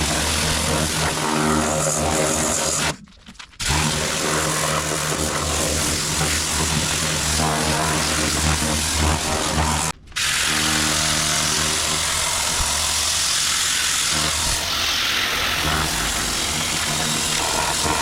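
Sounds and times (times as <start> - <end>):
pressure washer motor hum: 3.6 - 18.0
water jet hissing: 10.2 - 18.0.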